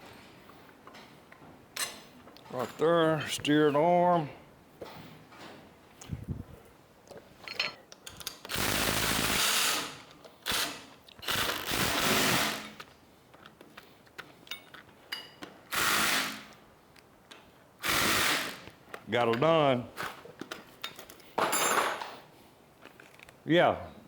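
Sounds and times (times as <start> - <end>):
power tool bursts: 8.5 - 12.8, 15.7 - 16.5, 17.8 - 18.7.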